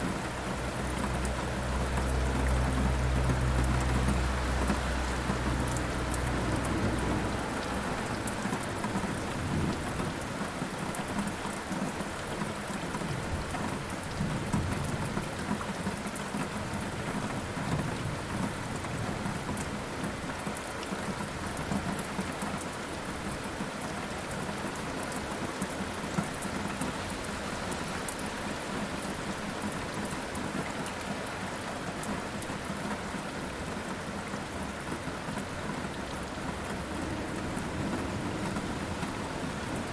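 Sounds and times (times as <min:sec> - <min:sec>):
rain hissing: 0:00.0 - 0:10.9, 0:34.9 - 0:39.9
thunder rumbling: 0:35.8 - 0:39.9.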